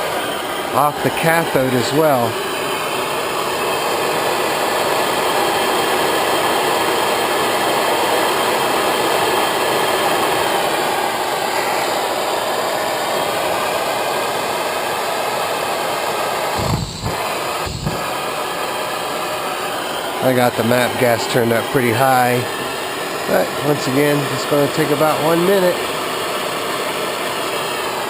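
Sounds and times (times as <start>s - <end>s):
gas torch flame hissing: 0.0s - 28.0s
flame low bump: 16.5s - 18.8s.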